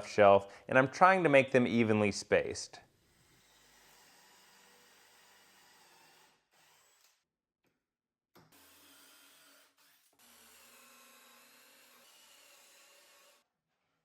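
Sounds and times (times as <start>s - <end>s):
faint drill boring into wood: 3.3s - 7.2s, 8.5s - 13.4s.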